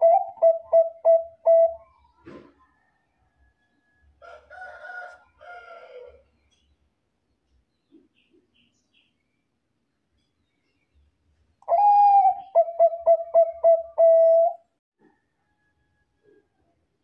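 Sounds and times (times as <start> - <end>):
dove cooing: 0.0 - 2.5, 11.7 - 14.6
brief knock: 2.2 - 2.5.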